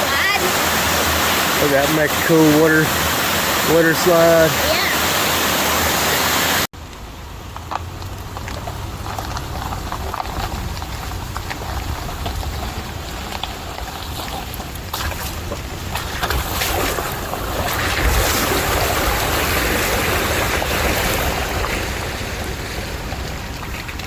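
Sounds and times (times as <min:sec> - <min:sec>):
waterfall pouring over rock: 0:00.0 - 0:06.7, 0:07.5 - 0:24.0
wind rumble on microphone: 0:08.0 - 0:24.0.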